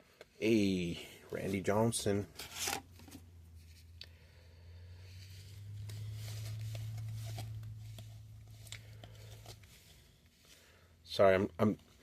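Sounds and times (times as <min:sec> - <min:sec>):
low steady hum: 0:00.0 - 0:12.0
trading cards rustling: 0:01.4 - 0:04.0, 0:05.1 - 0:10.8.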